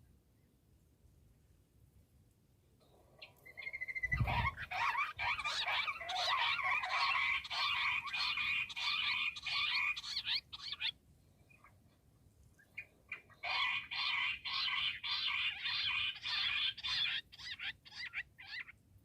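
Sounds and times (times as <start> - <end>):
quail chattering calls: 3.2 - 11.0, 12.8 - 18.8.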